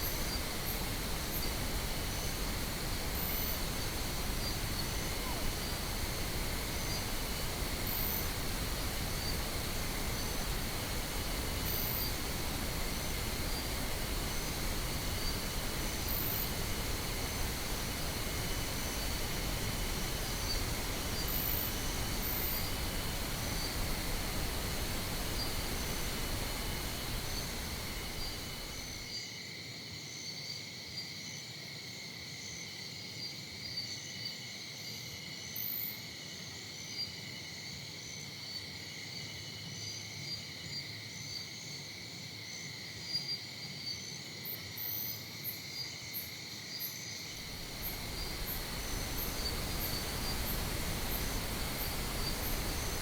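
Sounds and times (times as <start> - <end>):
pink noise: 0.0 - 29.1, 47.4 - 53.0
insects chirping: 0.0 - 29.2, 44.0 - 53.0.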